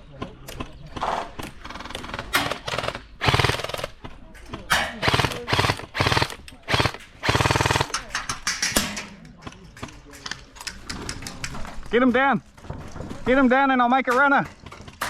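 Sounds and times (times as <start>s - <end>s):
airsoft guns rapid-fire bursts: 1.6s - 4.0s, 5.0s - 8.1s.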